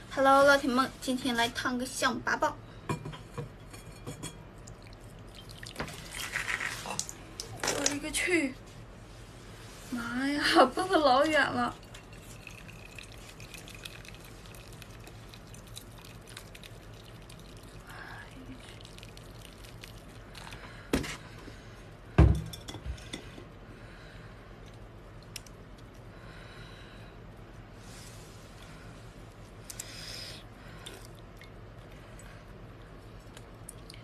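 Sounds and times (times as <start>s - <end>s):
kitchenware clinking: 2.9s - 4.4s
water dripping and trickling: 4.6s - 8.0s, 11.6s - 20.6s.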